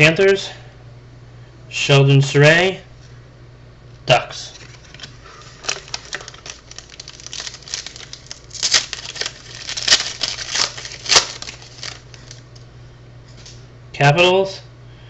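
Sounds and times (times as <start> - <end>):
trading cards crinkling and clicking: 4.5 - 12.6.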